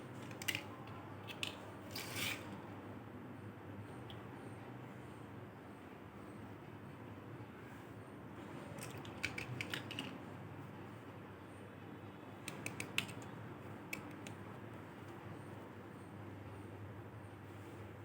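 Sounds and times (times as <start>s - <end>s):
plastic toy figures clicking: 0.2s - 0.7s, 8.8s - 10.2s, 12.5s - 13.3s, 13.9s - 14.4s.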